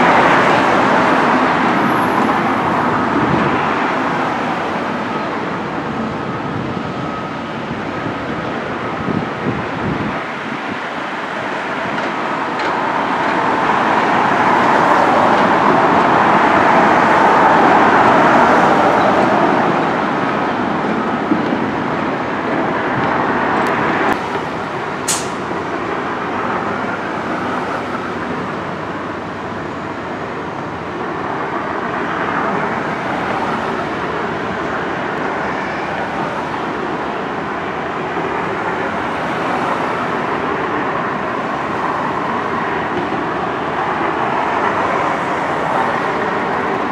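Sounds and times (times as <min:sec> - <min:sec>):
road traffic rush: 0:00.0 - 0:46.9
sharp click: 0:25.1 - 0:25.4.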